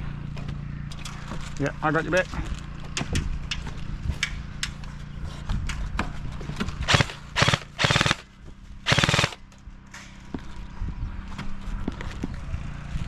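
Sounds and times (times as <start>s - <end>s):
airsoft gun bursts: 6.9s - 8.3s, 8.9s - 9.4s.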